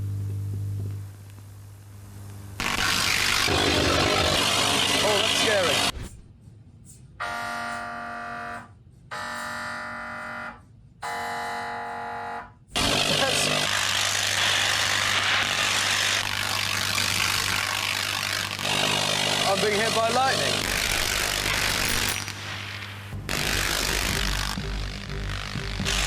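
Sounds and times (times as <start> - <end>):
electrical discharge buzzing crackle: 0.0 - 6.2, 6.9 - 26.0
low hum: 0.0 - 11.0
warning alarm tones: 7.1 - 13.7.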